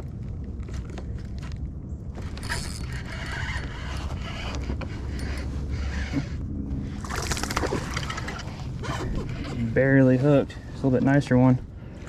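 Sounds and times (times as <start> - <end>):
steady low rumble: 0.0 - 12.0
fishing reel clicking and creaking: 2.2 - 6.3.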